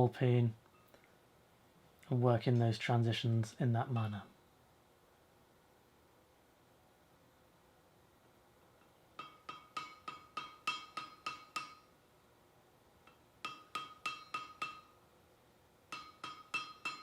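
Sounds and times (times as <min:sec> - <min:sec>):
hammer ringing on iron bar: 0:09.2 - 0:11.9, 0:13.1 - 0:15.0, 0:15.9 - 0:17.0.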